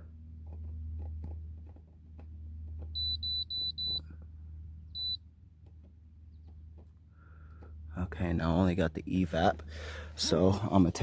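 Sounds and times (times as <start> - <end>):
short high beeps: 3.0 - 4.0, 5.0 - 5.2.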